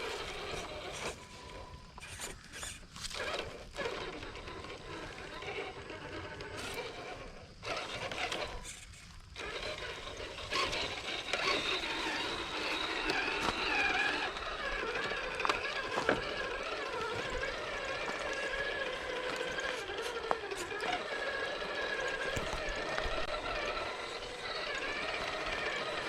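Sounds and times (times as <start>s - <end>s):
electric motor whining: 0.0s - 26.0s
truck knocking on rocks: 22.2s - 23.4s.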